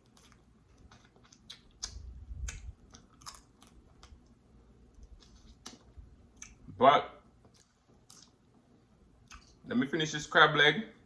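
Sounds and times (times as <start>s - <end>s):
chewing: 0.0s - 6.6s, 7.4s - 8.4s, 9.2s - 9.6s
crab shell cracking: 0.1s - 4.3s.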